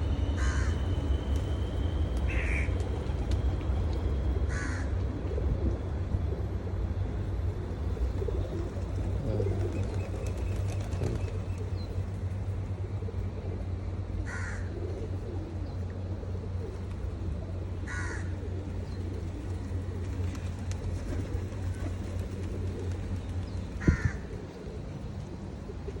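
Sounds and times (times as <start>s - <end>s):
steady low hum: 0.0s - 26.0s
crow cawing: 0.4s - 0.8s, 2.3s - 2.7s, 4.5s - 4.9s, 14.3s - 14.7s, 17.9s - 18.4s, 23.8s - 24.3s
pigeons cooing: 7.7s - 12.1s, 14.3s - 26.0s.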